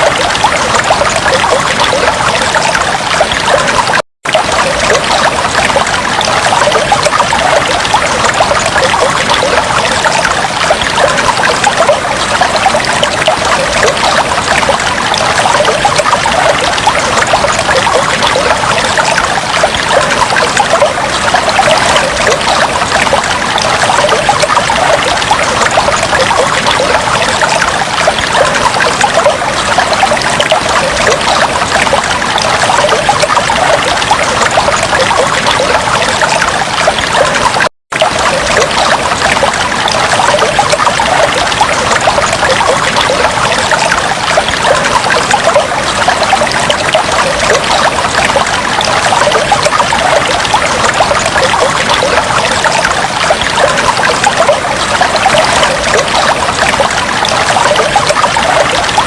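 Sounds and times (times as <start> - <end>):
aquarium water trickling and bubbling: 0.0 - 59.0.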